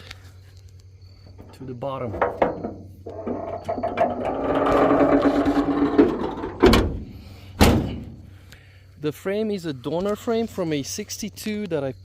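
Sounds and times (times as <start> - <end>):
heavy thump: 1.3 - 8.4.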